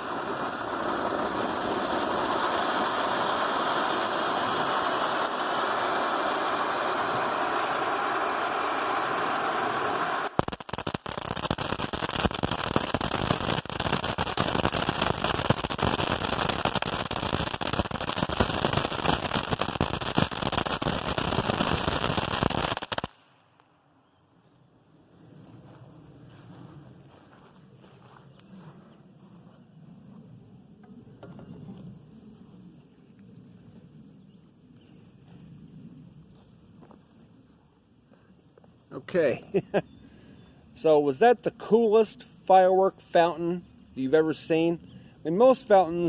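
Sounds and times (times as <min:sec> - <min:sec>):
firework fountain hissing spray: 0:00.0 - 0:23.4
firework crackling pops: 0:00.0 - 0:23.8.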